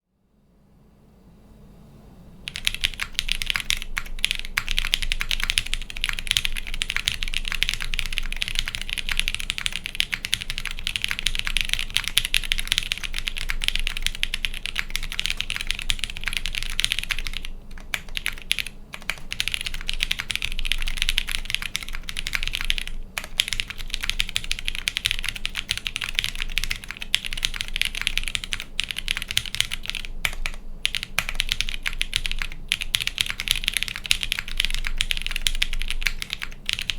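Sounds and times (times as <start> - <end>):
fast typing on mechanical keyboard: 2.5 - 36.9.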